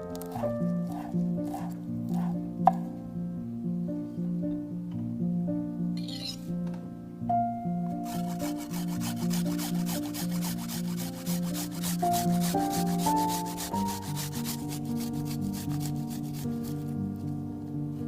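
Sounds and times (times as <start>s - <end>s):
background music with sustained notes: 0.0s - 18.0s
fast scraping strokes: 0.2s - 2.4s, 8.0s - 17.0s.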